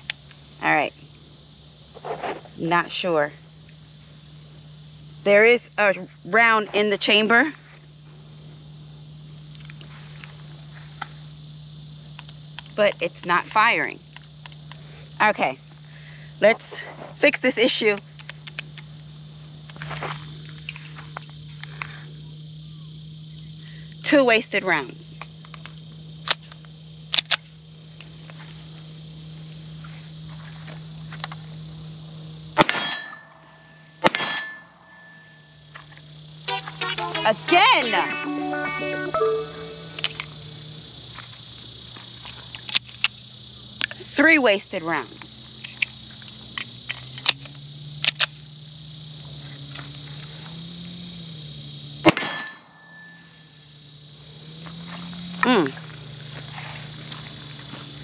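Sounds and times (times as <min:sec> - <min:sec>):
pistol metallic clicks: 0:27.1 - 0:27.5
loud metallic clang with ring: 0:32.6 - 0:35.6, 0:52.0 - 0:53.4.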